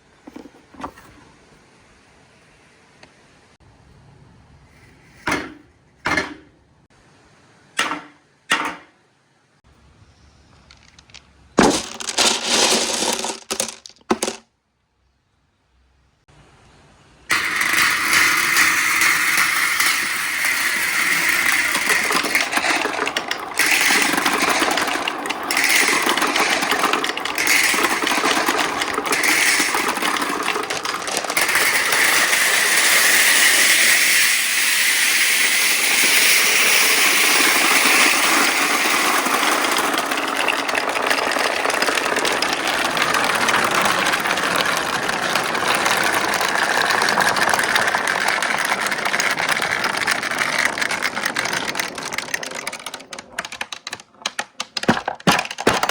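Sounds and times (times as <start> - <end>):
marbles rattling clatter: 10.6 - 14.4, 17.3 - 55.9
marbles rolling down track: 10.6 - 14.4, 17.3 - 55.9.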